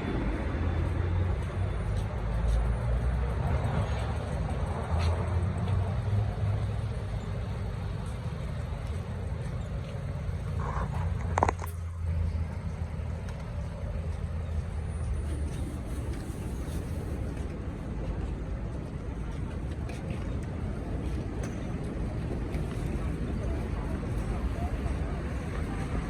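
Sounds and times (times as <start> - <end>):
traffic rumble: 0.0 - 26.0.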